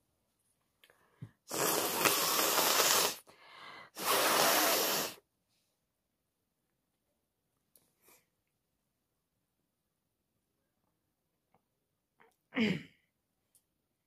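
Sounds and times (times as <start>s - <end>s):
forceful breath blasts: 1.5s - 5.2s
soft breath: 2.6s - 4.7s.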